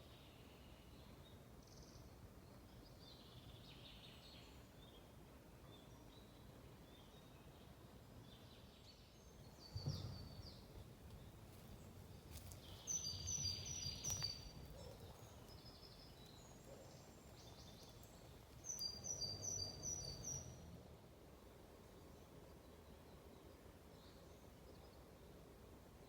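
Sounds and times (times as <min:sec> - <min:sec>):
bird chirps: 0:09.4 - 0:20.6
low thump: 0:09.7 - 0:10.9.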